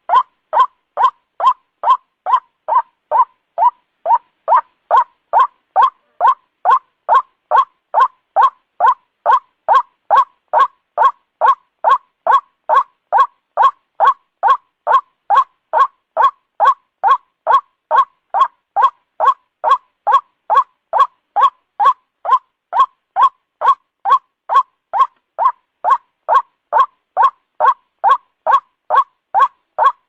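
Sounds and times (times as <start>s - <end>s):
waterhen calling: 0.0s - 30.0s.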